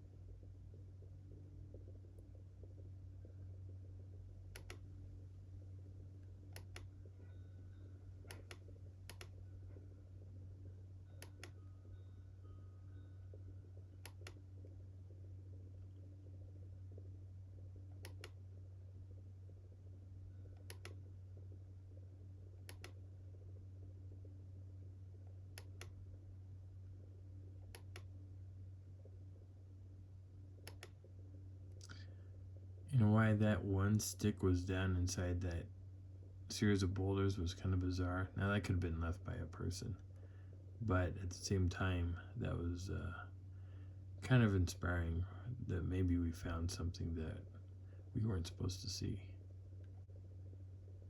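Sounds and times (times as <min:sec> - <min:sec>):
low electrical hum: 0:00.0 - 0:51.0
computer mouse clicking: 0:04.5 - 0:04.9, 0:06.5 - 0:06.9, 0:08.3 - 0:09.4, 0:11.2 - 0:11.6, 0:14.0 - 0:14.4, 0:18.0 - 0:18.4, 0:20.5 - 0:21.0, 0:22.6 - 0:23.0, 0:25.5 - 0:26.0, 0:27.6 - 0:28.1, 0:30.6 - 0:31.0.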